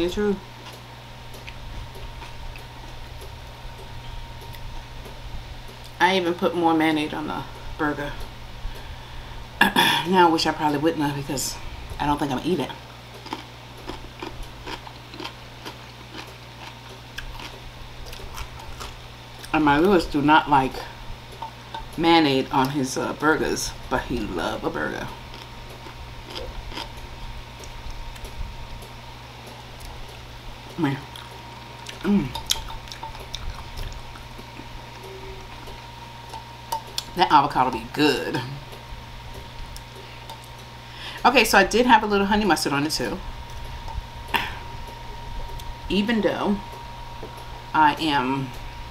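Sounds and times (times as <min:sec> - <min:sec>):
steady low hum: 0:00.0 - 0:48.9
wet chewing and mouth clicks: 0:13.2 - 0:19.5, 0:25.3 - 0:28.9, 0:31.0 - 0:37.2
wet chewing smacks: 0:31.1 - 0:34.7
short voiced hum: 0:35.0 - 0:35.7.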